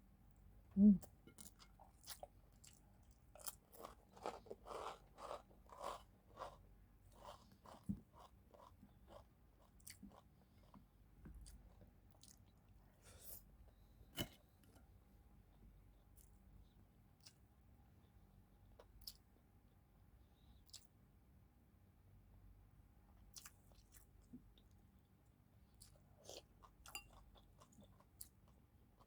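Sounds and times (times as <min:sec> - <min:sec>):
chewing crunchy food: 0:01.0 - 0:12.8, 0:25.7 - 0:29.0.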